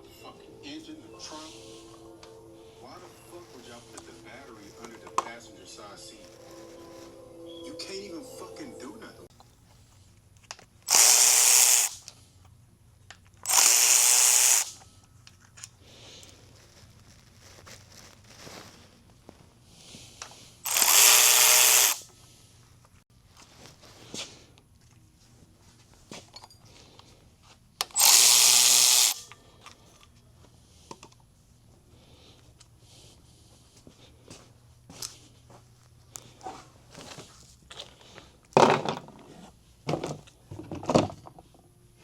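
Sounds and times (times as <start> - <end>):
handheld power tool bursts: 10.8 - 12.2, 13.4 - 14.8, 20.6 - 22.1, 27.8 - 29.4.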